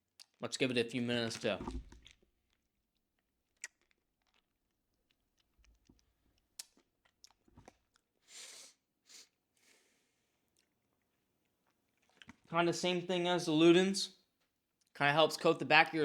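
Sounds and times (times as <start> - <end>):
short breathy hisses: 8.3 - 10.0.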